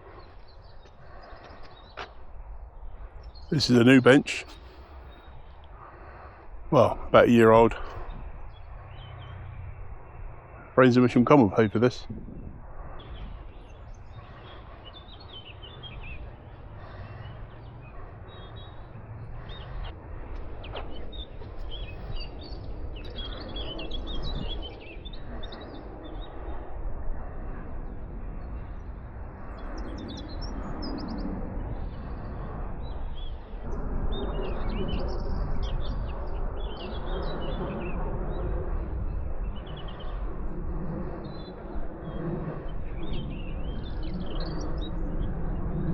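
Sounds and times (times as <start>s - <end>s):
steady low rumble: 0.0s - 45.9s
small songbirds chirping and singing: 7.6s - 11.2s, 13.0s - 19.9s, 20.6s - 26.4s.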